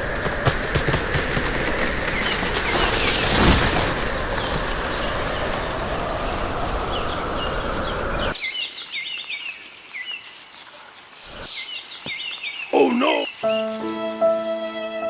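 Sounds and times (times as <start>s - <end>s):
steady rushing noise: 0.0s - 8.9s
small birds chirping: 2.1s - 14.8s.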